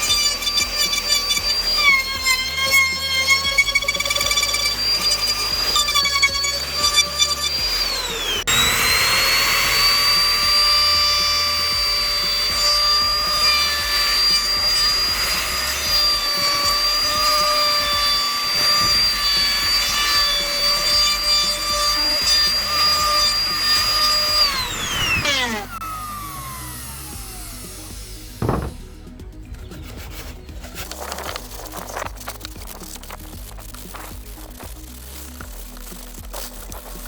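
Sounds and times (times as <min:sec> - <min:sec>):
power tool motor whining: 0:00.0 - 0:29.1.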